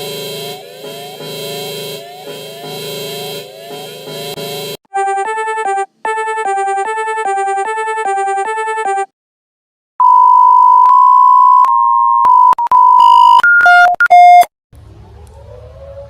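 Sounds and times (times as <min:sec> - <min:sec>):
faint rising siren wail: 0:00.0 - 0:04.8, 0:14.8 - 0:16.0
loud steady beep tone: 0:00.0 - 0:04.8
rapid alternating high and low beeps: 0:00.0 - 0:04.8
two-note warble alarm tone: 0:00.0 - 0:04.8.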